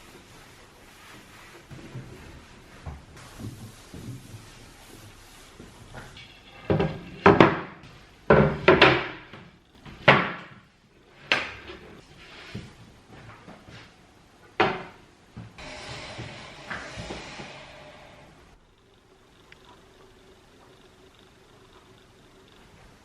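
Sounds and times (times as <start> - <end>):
household knocks and clunks: 6.0 - 10.6.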